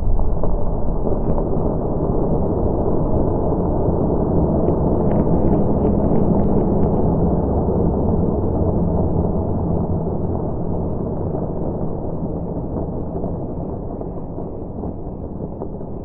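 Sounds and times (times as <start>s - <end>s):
faint crackles: 0.0s - 16.0s
muffled rumble of fireworks: 0.0s - 16.0s.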